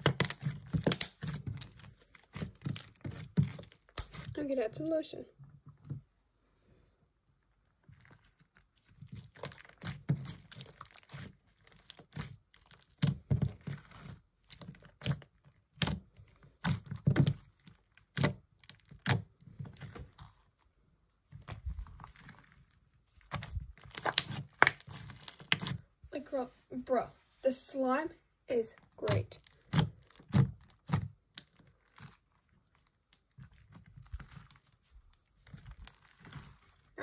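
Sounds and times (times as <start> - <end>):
wet clicks and pops: 0.0 - 2.9, 23.3 - 25.8
hands squishing slime: 0.0 - 4.4, 7.8 - 20.6, 21.2 - 25.8, 28.5 - 37.0.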